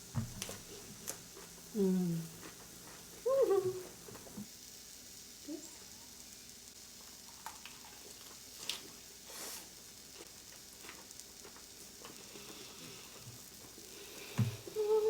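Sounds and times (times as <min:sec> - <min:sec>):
meat sizzling on grill pan: 0:02.6 - 0:15.0.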